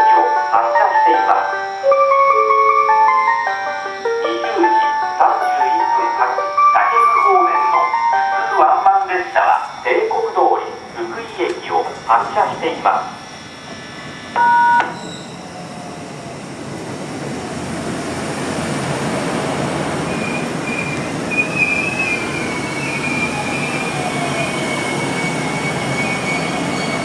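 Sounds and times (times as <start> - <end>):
electric train running: 0.0 - 27.0
high-pitched wheel squeal: 13.2 - 15.7, 20.1 - 27.0
two-tone electronic beep: 14.4 - 15.1.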